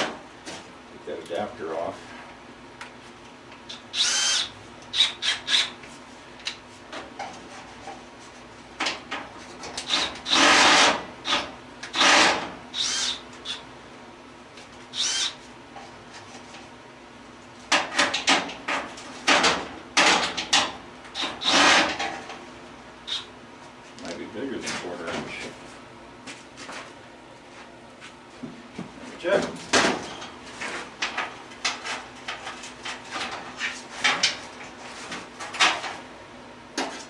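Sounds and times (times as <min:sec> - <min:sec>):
tools scraping and rattling metal: 0:29.3 - 0:36.0.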